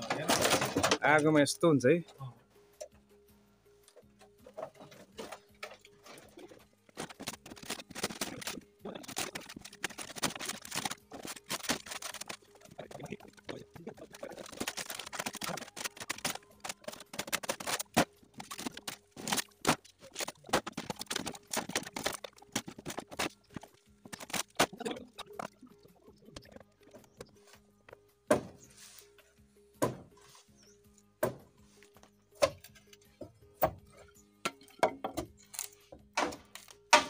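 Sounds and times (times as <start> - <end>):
demolition knocks and clatters: 0.0 - 1.0, 4.4 - 25.4.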